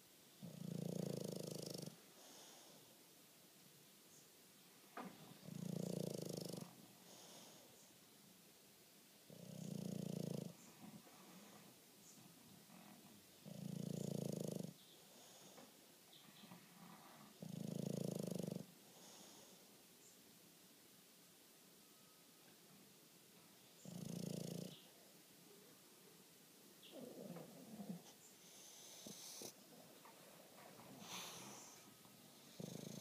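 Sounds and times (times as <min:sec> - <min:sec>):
dog snoring: 0:00.4 - 0:02.8, 0:05.3 - 0:07.6, 0:09.3 - 0:11.7, 0:12.7 - 0:15.6, 0:16.8 - 0:19.6, 0:23.8 - 0:24.8, 0:26.9 - 0:29.6, 0:30.8 - 0:33.0
dog breathing softly: 0:26.9 - 0:33.0.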